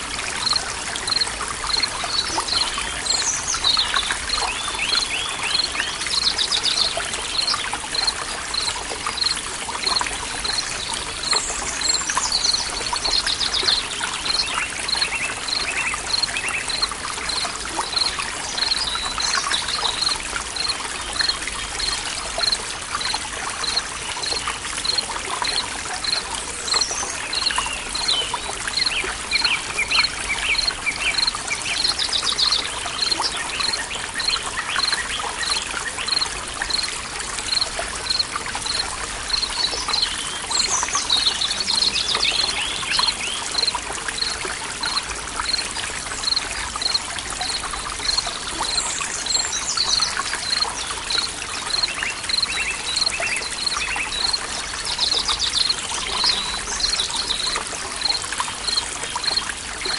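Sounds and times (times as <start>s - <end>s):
stream trickling and gurgling: 0.0s - 59.9s
birds calling and singing: 48.1s - 57.6s.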